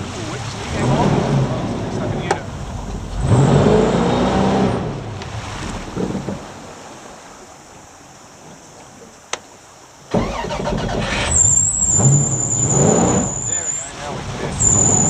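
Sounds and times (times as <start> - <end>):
jet boat engine accelerating: 0.0 - 6.9, 10.1 - 15.0.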